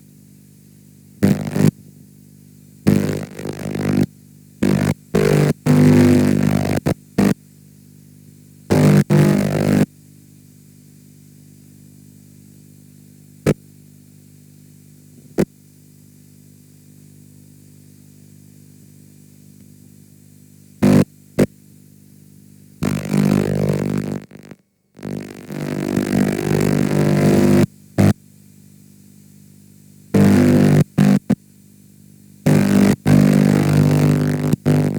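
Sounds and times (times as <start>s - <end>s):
steady buzzing hum: 0.0s - 34.9s.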